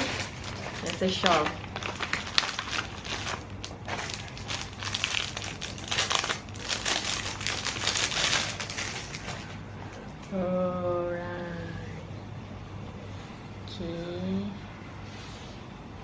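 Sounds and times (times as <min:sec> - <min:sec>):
packaging crinkling and rustling: 0:00.0 - 0:10.0.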